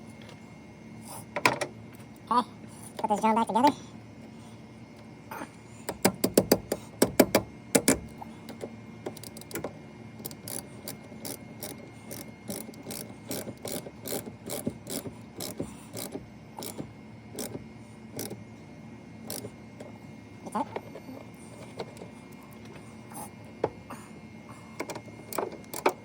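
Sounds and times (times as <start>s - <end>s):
ratchet wrench clicking: 10.2s - 16.8s, 17.4s - 17.6s, 18.2s - 18.4s, 19.3s - 19.5s.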